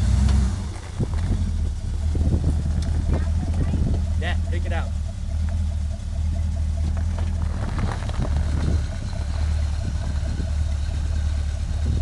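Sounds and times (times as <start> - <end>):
off-road vehicle engine rumbling: 0.0 - 12.0
knocks and crunches on rocks: 6.9 - 8.8.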